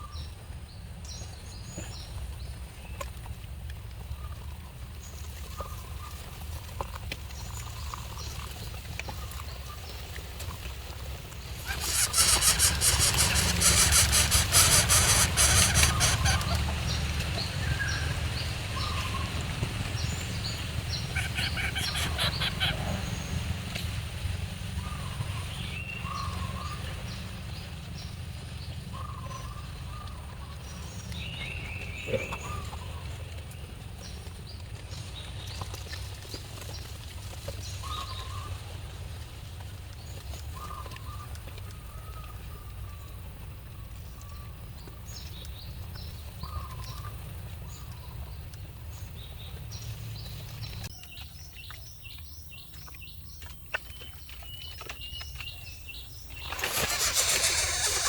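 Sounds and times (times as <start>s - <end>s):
loud crackling rustle: 11.1s - 21.1s, 56.4s - 58.0s
birds calling: 11.1s - 27.8s, 52.6s - 58.0s.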